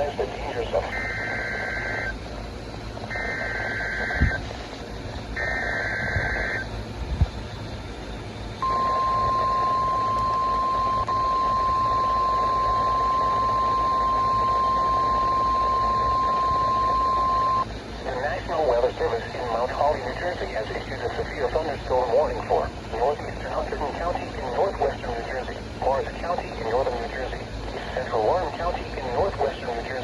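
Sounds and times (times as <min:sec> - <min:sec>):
buzzy digital data tones: 0:00.0 - 0:02.2, 0:03.0 - 0:04.8, 0:05.4 - 0:06.7, 0:08.6 - 0:30.0
radio hiss: 0:00.0 - 0:07.4, 0:08.6 - 0:30.0
steady warning alarm tone: 0:00.8 - 0:02.2, 0:03.0 - 0:04.5, 0:05.4 - 0:06.8, 0:08.6 - 0:17.7.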